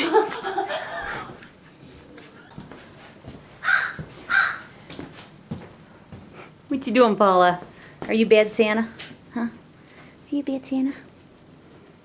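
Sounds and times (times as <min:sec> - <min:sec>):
bird rasping calls: 0:03.6 - 0:04.7.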